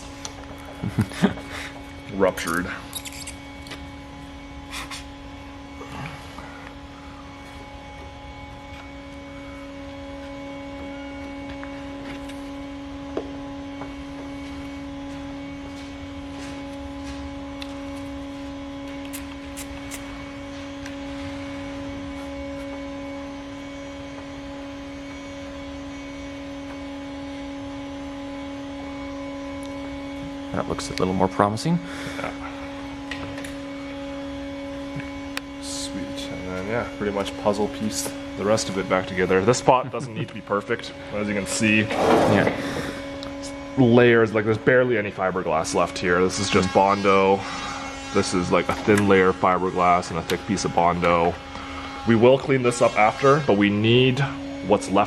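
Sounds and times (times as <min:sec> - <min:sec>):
steady electrical hum: 0:00.0 - 0:55.0.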